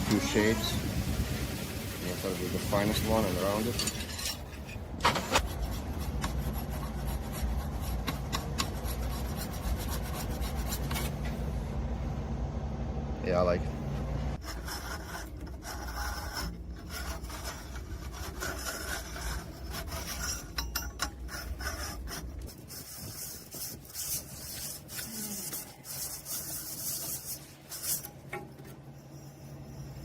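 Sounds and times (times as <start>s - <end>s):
hand file rasping on metal: 5.4s - 11.1s, 14.4s - 28.2s.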